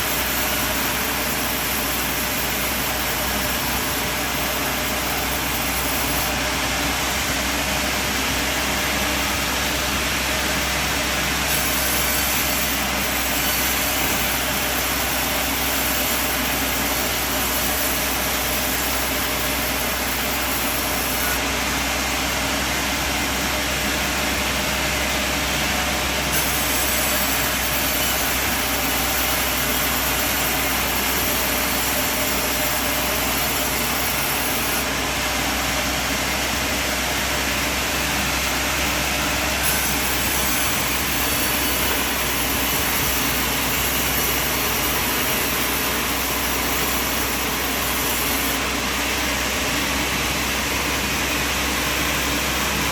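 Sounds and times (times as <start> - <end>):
sawmill machine running: 0.0 - 52.9.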